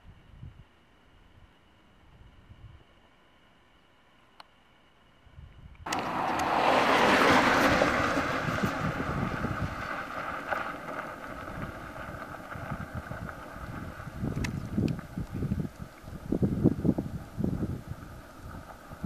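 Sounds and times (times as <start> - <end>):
car driving on rough road: 5.8 - 19.0.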